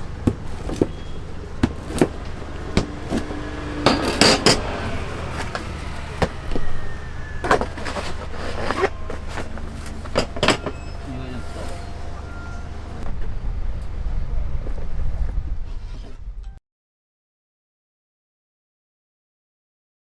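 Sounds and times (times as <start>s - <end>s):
utensils and pans clattering: 0.3s - 6.5s, 7.4s - 12.1s.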